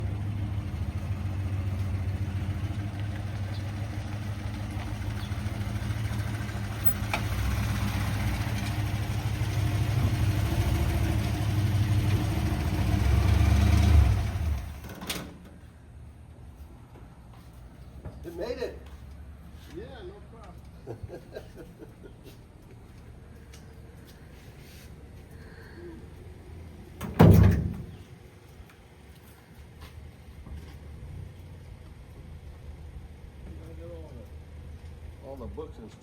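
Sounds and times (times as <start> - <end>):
car engine running: 0.0 - 14.8.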